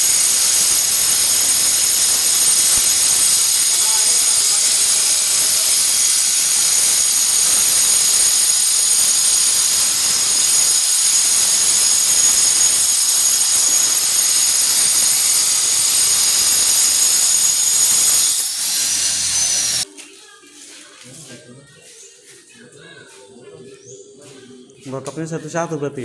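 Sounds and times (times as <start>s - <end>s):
angle grinder cutting glass: 0.0s - 19.9s.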